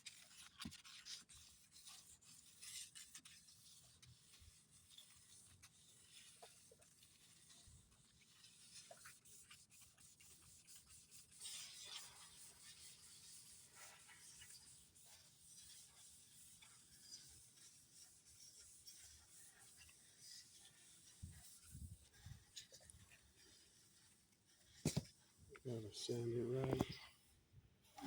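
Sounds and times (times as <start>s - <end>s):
hand sanding paint: 0.1s - 26.8s.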